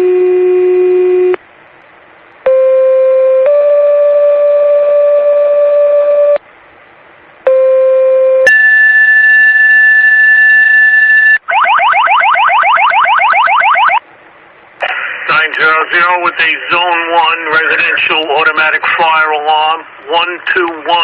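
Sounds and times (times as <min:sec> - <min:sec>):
two-tone page: 0:07.5 - 0:11.8.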